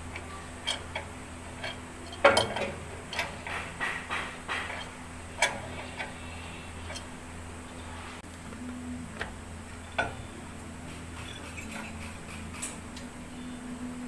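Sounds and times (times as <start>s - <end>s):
hand tools clicking: 0.0s - 7.1s
steady low hum: 0.0s - 14.0s.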